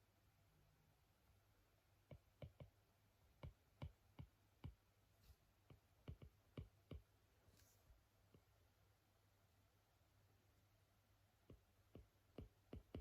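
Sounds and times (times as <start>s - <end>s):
sharp clicking taps: 2.0s - 2.8s, 3.4s - 4.8s, 5.6s - 7.1s, 11.4s - 13.0s.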